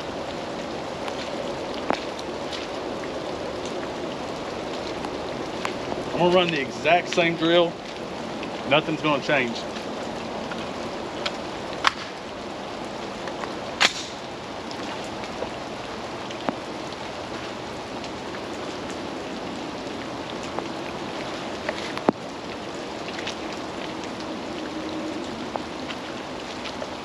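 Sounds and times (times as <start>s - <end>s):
pouring rain: 0.0s - 27.0s.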